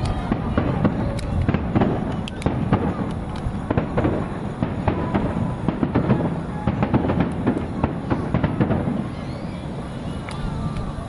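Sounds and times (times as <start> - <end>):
fireworks booms and cracks: 0.0 - 11.0.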